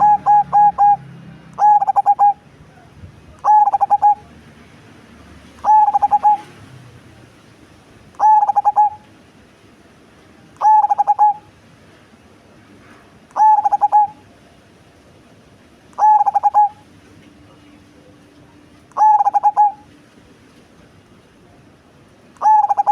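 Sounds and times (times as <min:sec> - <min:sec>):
dove cooing: 0:00.0 - 0:02.4, 0:03.4 - 0:04.2, 0:05.6 - 0:06.6, 0:08.2 - 0:09.0, 0:10.6 - 0:11.4, 0:13.4 - 0:14.2, 0:16.0 - 0:16.8, 0:18.9 - 0:19.9, 0:22.4 - 0:22.9.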